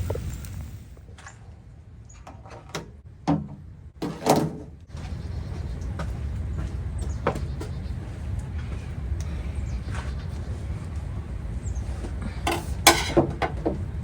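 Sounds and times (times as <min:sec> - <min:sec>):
steady low rumble: 0:00.0 - 0:02.1, 0:04.8 - 0:12.4.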